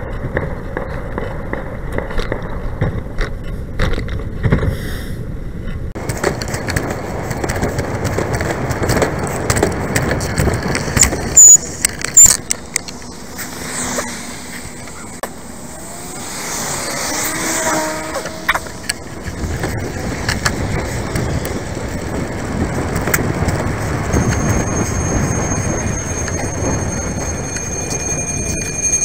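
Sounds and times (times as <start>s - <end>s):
wind and road noise: 0.0s - 29.0s
high squeal: 11.1s - 29.0s.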